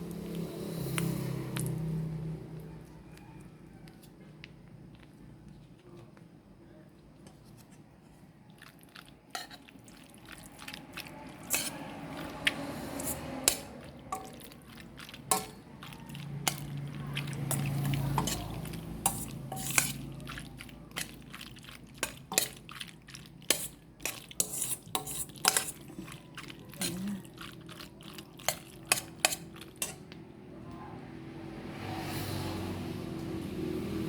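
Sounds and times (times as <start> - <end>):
utensils clinking against pot: 11.4 - 12.4, 13.0 - 20.4, 22.0 - 22.7, 23.5 - 27.5, 28.4 - 30.1.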